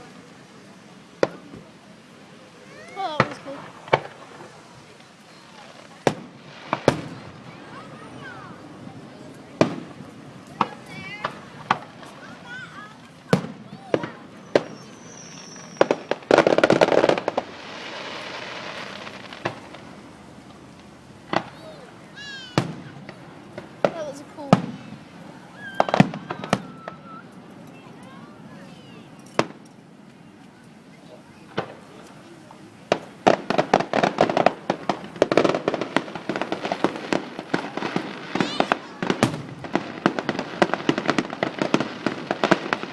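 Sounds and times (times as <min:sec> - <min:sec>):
firework bangs: 0:00.0 - 0:42.9
fizzing hiss: 0:00.0 - 0:42.9
rapid crackling pops: 0:02.8 - 0:28.2, 0:31.4 - 0:42.9
firework whistle: 0:10.7 - 0:19.8, 0:21.3 - 0:23.2, 0:24.6 - 0:27.4, 0:33.0 - 0:42.9.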